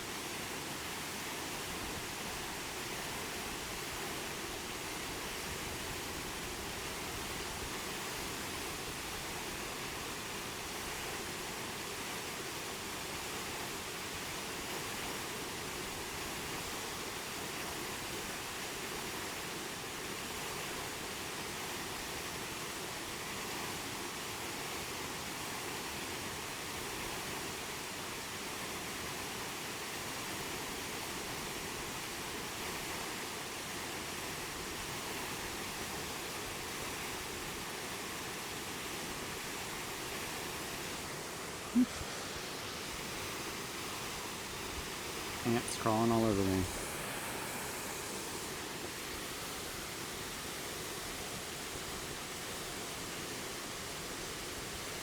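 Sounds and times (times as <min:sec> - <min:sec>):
waterfall rushing: 0:40.9 - 0:51.4.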